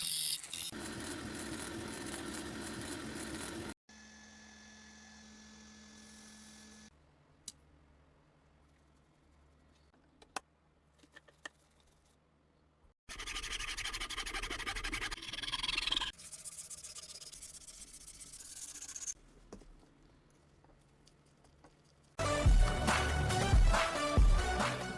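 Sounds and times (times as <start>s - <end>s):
scratchy rubbing strokes: 13.1s - 19.2s
music: 22.2s - 24.9s.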